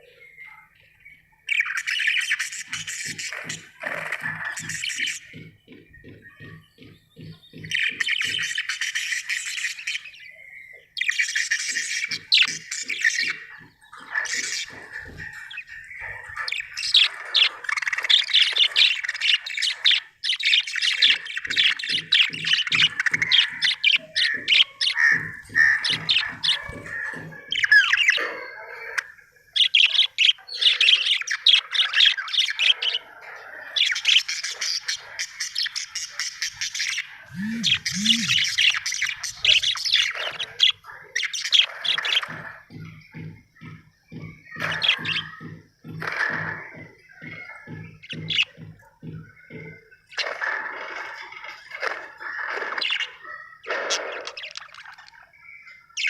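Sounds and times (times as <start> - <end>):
budgerigar chirping and warbling: 1.5 - 42.8, 44.2 - 51.2, 52.1 - 56.0
budgerigar squawks: 33.8 - 42.5.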